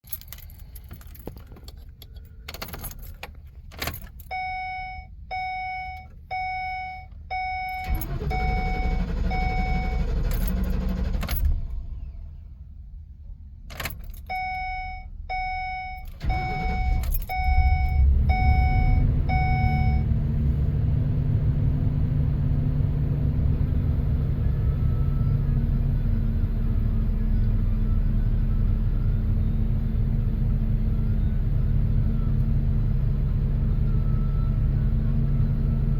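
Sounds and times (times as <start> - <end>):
vehicle warning chime: 4.3 - 11.4, 14.2 - 20.2
engine idling: 7.4 - 12.5, 16.1 - 20.8
engine cranking: 7.8 - 11.9, 16.2 - 19.9.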